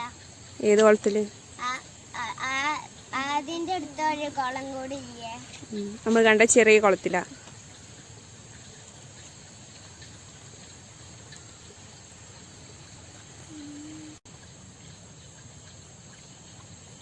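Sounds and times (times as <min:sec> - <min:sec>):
crickets chirring: 0:00.0 - 0:17.0.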